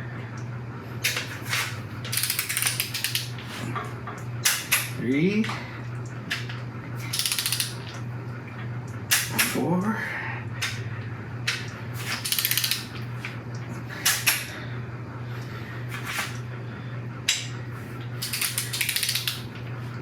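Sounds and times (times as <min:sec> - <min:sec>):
torque wrench clicks: 0:02.1 - 0:03.3, 0:07.1 - 0:07.8, 0:12.2 - 0:12.9, 0:18.2 - 0:19.5
torque wrench ratcheting: 0:02.1 - 0:03.3, 0:07.1 - 0:07.8, 0:12.2 - 0:12.9, 0:18.2 - 0:19.5.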